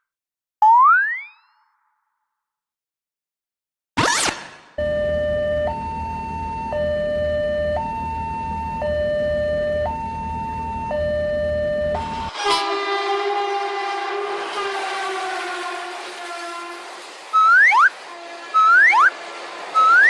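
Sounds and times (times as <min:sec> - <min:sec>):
electronic two-tone warning sound: 0:04.8 - 0:12.4
low rumble of running train: 0:04.8 - 0:20.0
train horn blaring: 0:10.8 - 0:20.0.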